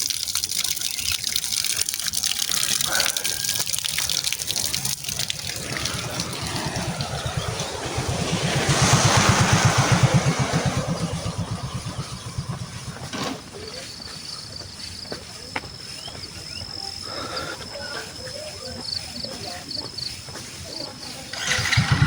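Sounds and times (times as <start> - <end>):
vehicle engine passing by: 4.5 - 14.4, 21.2 - 22.0.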